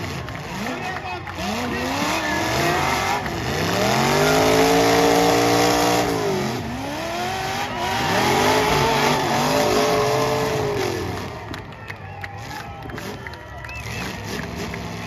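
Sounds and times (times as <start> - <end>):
car engine revving hard: 0.0 - 11.8, 12.4 - 15.0.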